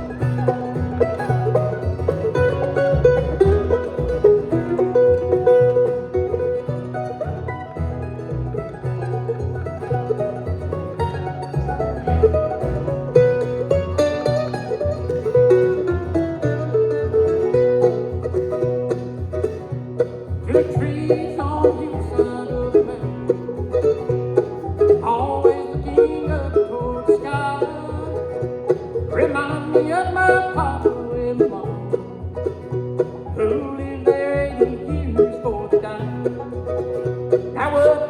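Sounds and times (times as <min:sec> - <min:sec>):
melodic lead phrases: 0:00.0 - 0:20.4
banjo rolls: 0:00.0 - 0:38.0
guitar accompaniment: 0:00.0 - 0:38.0.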